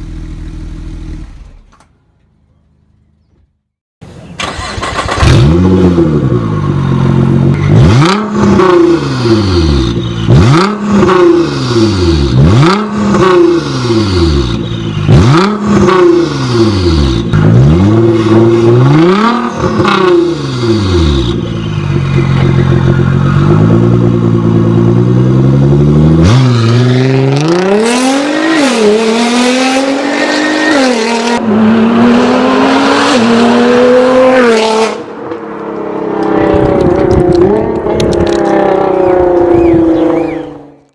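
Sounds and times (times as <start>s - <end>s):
sports car engine revving: 4.5s - 35.2s
car accelerating hard: 7.1s - 35.2s.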